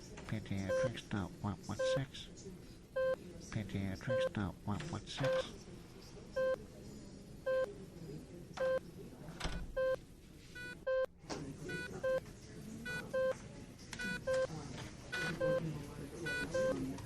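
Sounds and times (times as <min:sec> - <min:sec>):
murmur of background voices: 0:00.0 - 0:17.0
second beep pattern: 0:09.8 - 0:10.0.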